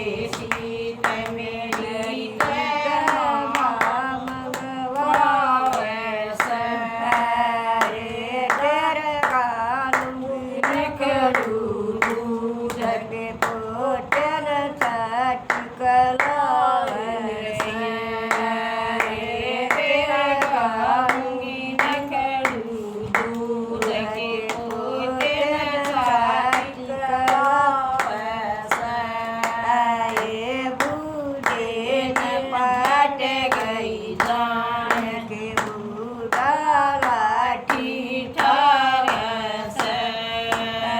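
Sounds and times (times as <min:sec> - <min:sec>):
woman singing devotional song: 0:00.0 - 0:40.9
hand claps: 0:00.2 - 0:40.9.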